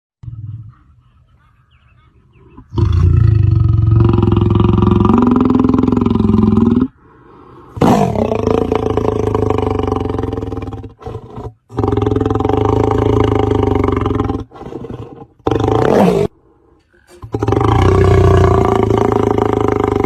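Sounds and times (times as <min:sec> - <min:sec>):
lion growling: 0:02.6 - 0:07.0, 0:07.7 - 0:20.0
lion roaring: 0:02.7 - 0:06.9, 0:07.8 - 0:16.4, 0:17.0 - 0:20.0.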